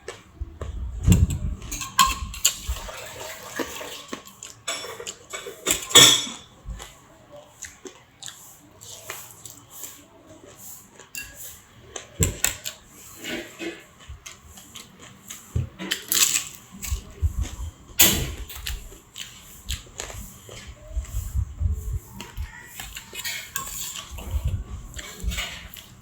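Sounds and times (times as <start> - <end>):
utensils clattering against dishes: 1.1 - 6.6, 12.2 - 13.9, 22.3 - 26.0.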